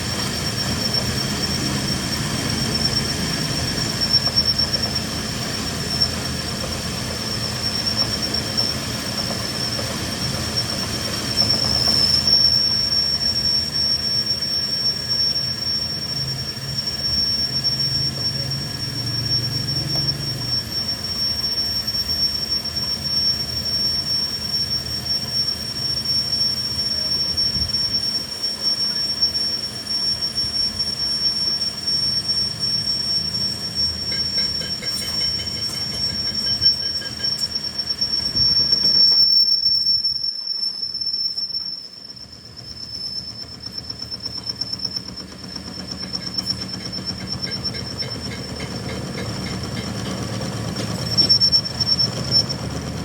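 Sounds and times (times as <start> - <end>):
metal-cutting machine squealing: 0.0 - 53.0.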